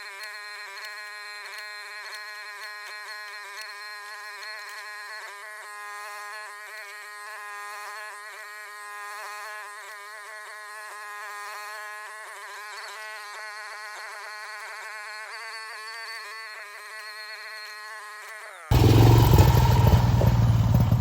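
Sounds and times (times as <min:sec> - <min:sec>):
excavator engine buzzing whine: 0:18.7 - 0:21.0.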